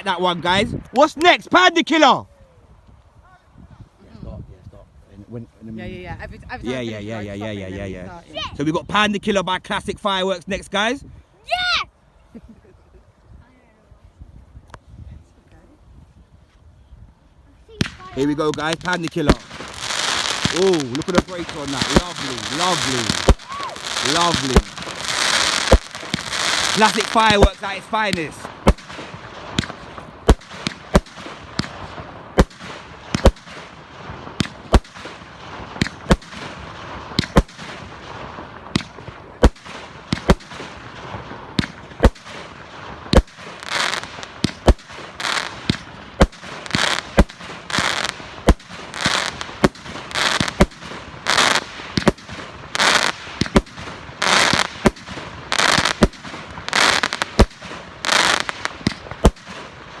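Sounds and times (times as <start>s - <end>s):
firework bursts: 17.7s - 60.0s
firework cake bangs: 18.6s - 60.0s.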